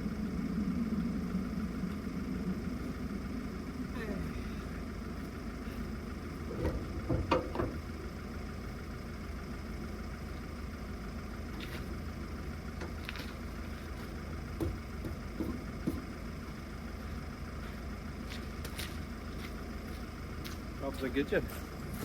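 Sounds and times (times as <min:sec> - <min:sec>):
vehicle engine running: 0:00.0 - 0:22.0
short knocks and clunks: 0:06.5 - 0:07.8, 0:14.6 - 0:16.1.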